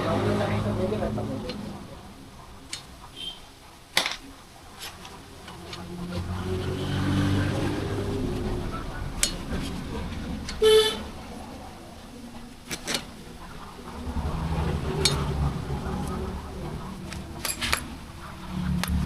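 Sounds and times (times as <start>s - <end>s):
road traffic rumble: 0.0s - 19.0s
vehicle horn toot: 3.1s - 3.5s, 10.6s - 11.1s.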